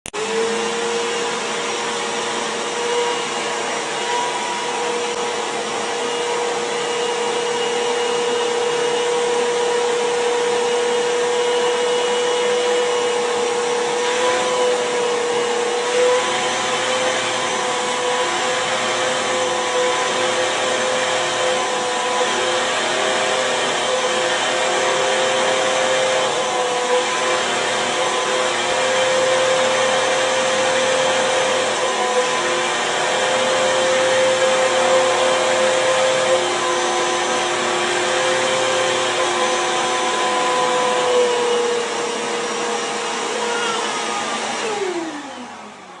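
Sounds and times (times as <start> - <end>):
vacuum cleaner running: 0.1 - 46.0.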